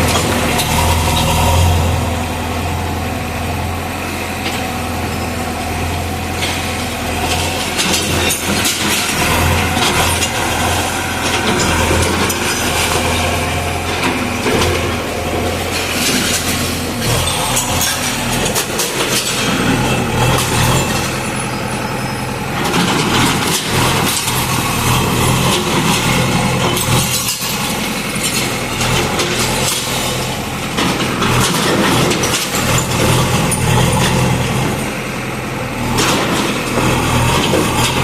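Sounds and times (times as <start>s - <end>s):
diesel engine humming: 0.0s - 38.0s
machine clanks and knocks: 6.3s - 21.5s, 22.6s - 34.9s, 35.8s - 38.0s.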